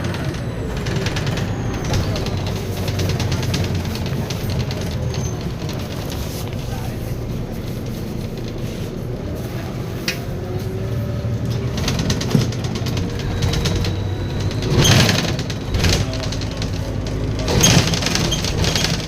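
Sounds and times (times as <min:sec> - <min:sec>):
rattling: 0:00.0 - 0:08.8, 0:11.4 - 0:19.0
bus diesel engine running: 0:00.0 - 0:19.0.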